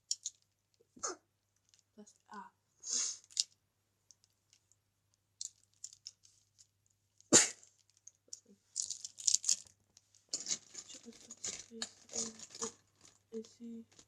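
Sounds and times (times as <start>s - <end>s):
rustling: 5.4s - 14.0s.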